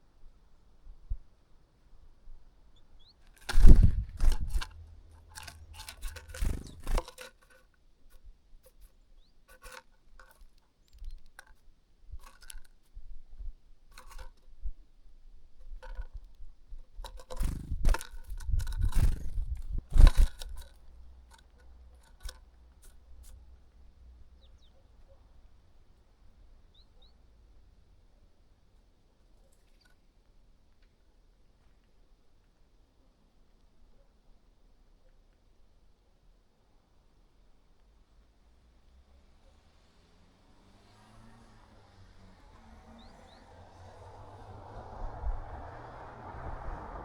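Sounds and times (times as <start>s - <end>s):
bird pecking and cracking seeds: 3.0s - 13.0s, 13.9s - 14.6s, 15.6s - 23.6s, 29.4s - 30.1s.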